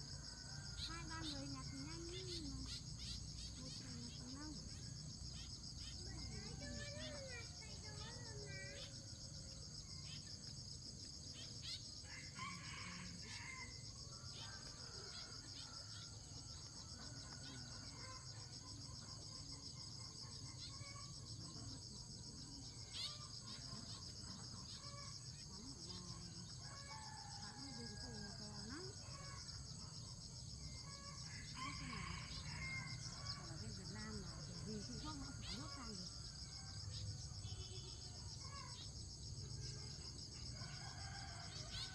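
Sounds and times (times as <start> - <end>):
insects trilling: 0.0 - 41.9.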